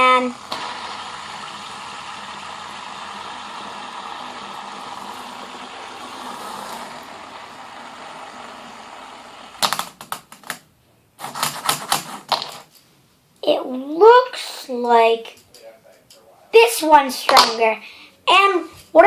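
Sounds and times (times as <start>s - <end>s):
fidget spinners whirring: 0.0s - 10.3s
sharp clicks and clacks: 9.6s - 10.6s, 17.3s - 17.6s.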